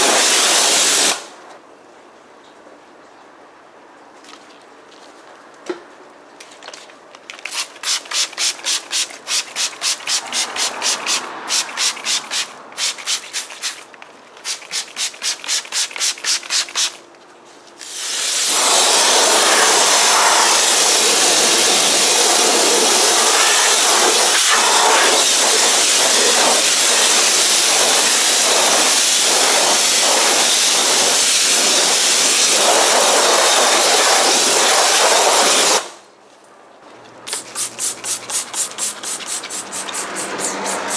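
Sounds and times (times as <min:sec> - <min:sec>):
pressure washer spraying water: 0:00.0 - 0:01.3, 0:07.5 - 0:17.0, 0:17.8 - 0:35.9, 0:37.3 - 0:40.9
brush scrubbing a car wheel: 0:07.5 - 0:17.0, 0:37.3 - 0:40.9.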